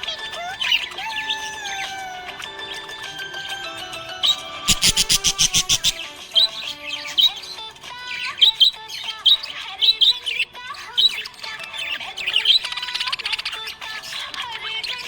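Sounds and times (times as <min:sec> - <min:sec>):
budgerigars chirping and warbling: 0:00.0 - 0:15.0.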